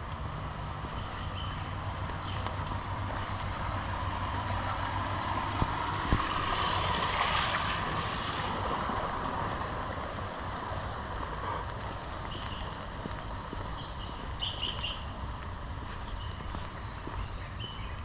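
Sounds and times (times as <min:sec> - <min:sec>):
rain falling on foliage: 0:00.0 - 0:13.6.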